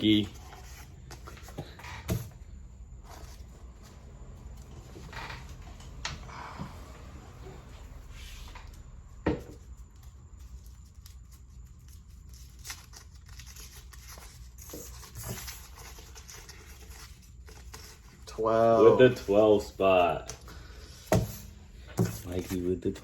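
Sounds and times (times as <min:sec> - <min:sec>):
paper rustling and crinkling: 0:09.5 - 0:20.2.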